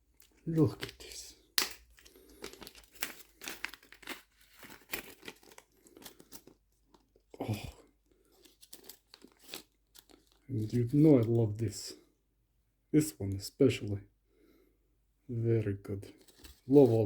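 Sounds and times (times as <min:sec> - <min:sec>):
packaging crinkling: 0:00.1 - 0:11.4
packaging tearing: 0:00.6 - 0:07.2, 0:08.3 - 0:10.4.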